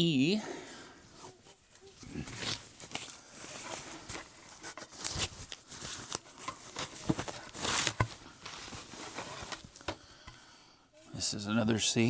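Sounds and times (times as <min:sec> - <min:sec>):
packaging rustling: 0:01.2 - 0:10.4.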